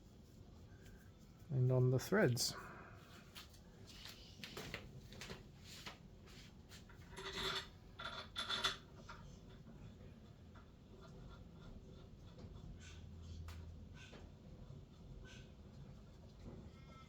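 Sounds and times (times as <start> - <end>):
metal bolts scraping and clicking: 7.0 - 9.2.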